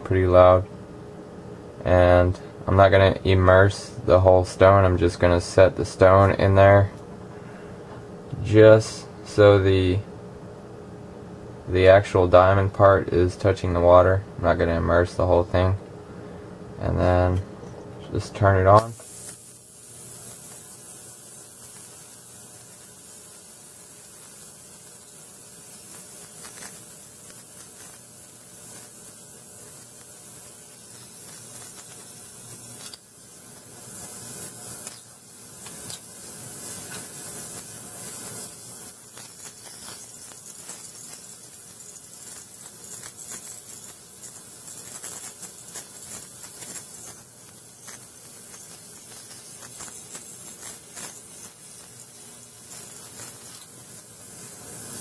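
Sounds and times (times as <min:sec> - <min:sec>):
ultrasonic cleaner hissing: 0:18.4 - 0:55.0.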